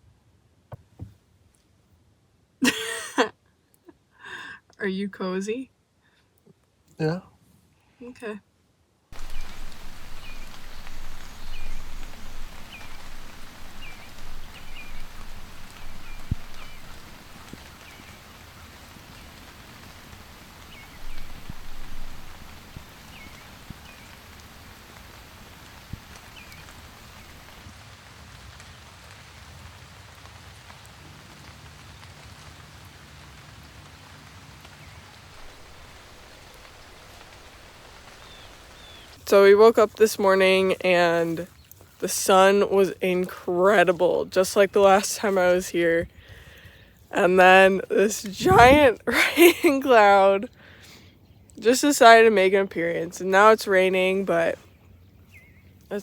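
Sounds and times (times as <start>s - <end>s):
steady rain falling: 2.6s - 3.3s, 9.1s - 54.7s
bird chirping: 9.2s - 27.6s, 34.9s - 39.2s, 54.9s - 55.8s.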